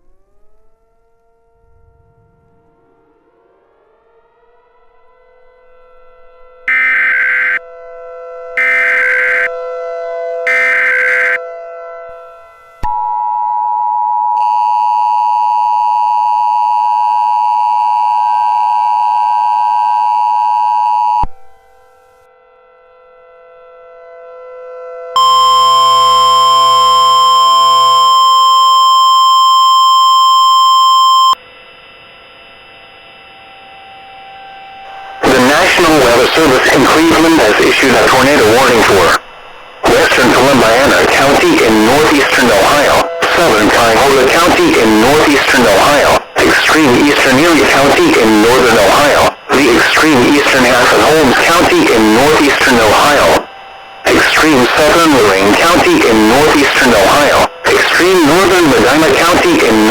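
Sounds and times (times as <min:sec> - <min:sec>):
header data tones: 0:06.7 - 0:07.6, 0:08.6 - 0:09.5, 0:10.5 - 0:11.4, 0:25.2 - 0:31.4, 0:34.9 - 0:59.9
two-tone attention signal: 0:08.6 - 0:09.5, 0:10.5 - 0:11.4, 0:25.2 - 0:31.4
faint steady tone: 0:25.2 - 0:59.9.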